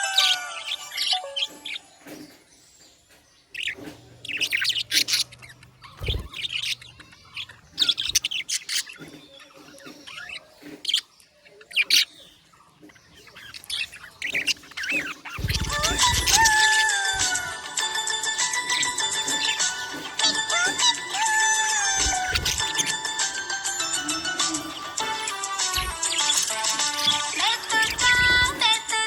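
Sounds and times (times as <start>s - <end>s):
budgerigars chirping: 0.0s - 29.0s.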